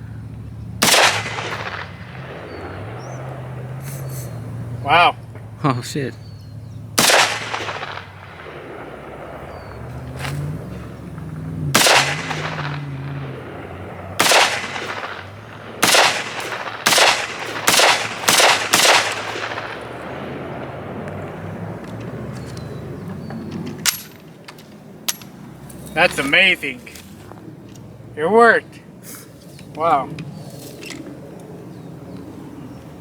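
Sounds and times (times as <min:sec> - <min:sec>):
rifle shots echoing: 0:00.8 - 0:05.5, 0:06.9 - 0:26.5.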